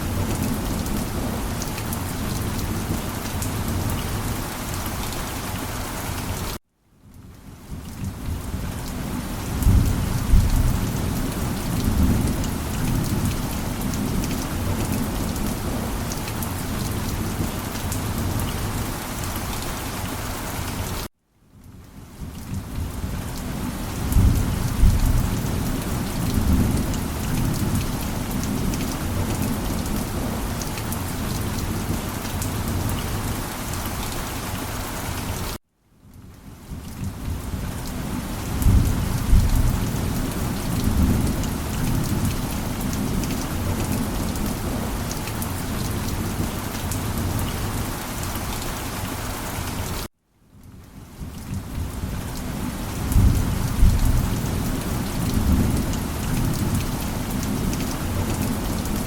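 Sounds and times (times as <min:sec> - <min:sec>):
heavy rain pattering: 0:00.0 - 0:59.0
rolling thunder rumble: 0:09.4 - 0:16.0, 0:24.0 - 0:30.5, 0:53.1 - 0:59.0.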